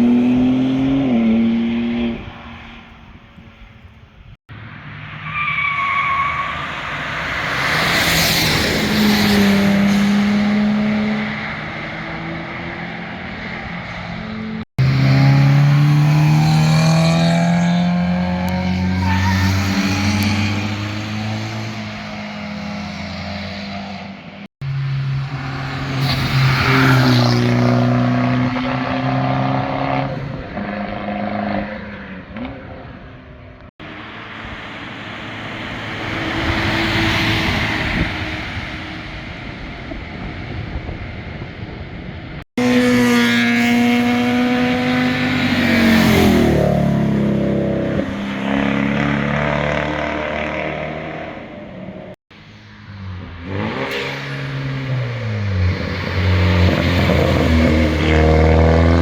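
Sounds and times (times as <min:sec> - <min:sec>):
sports car passing by: 0:34.4 - 0:39.9, 0:42.6 - 0:52.1, 0:52.9 - 0:59.0.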